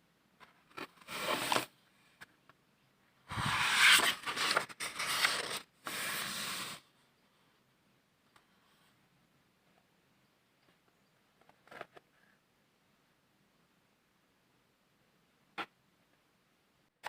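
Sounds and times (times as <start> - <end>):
rubbing and rustling handling noise: 0.4 - 2.5, 3.3 - 7.0.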